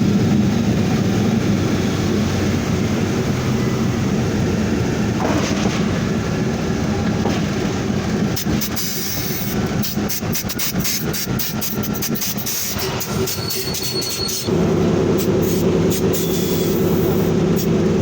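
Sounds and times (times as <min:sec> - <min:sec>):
engine rattling with rapid knocks: 0:00.0 - 0:18.0
radial engine and propeller droning: 0:00.0 - 0:18.0.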